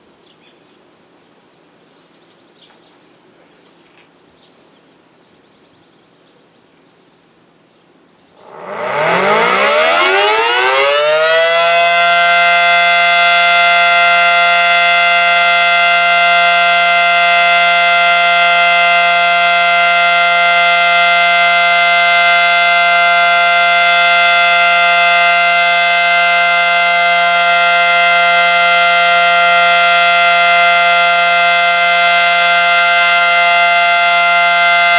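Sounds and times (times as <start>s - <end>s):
warning siren: 8.4s - 34.9s.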